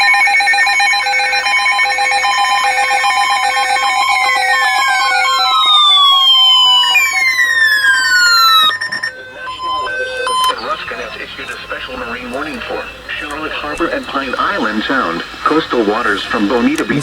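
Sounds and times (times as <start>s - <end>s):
warbling data bursts: 0.0s - 17.0s
electronic alert beeps: 2.0s - 17.0s
falling whistling tones: 2.1s - 15.6s.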